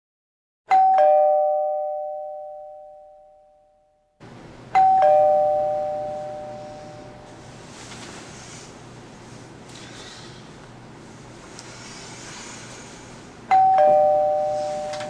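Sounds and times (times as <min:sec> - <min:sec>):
two-tone doorbell chime: 0:00.7 - 0:04.1, 0:04.7 - 0:07.4, 0:13.5 - 0:15.0.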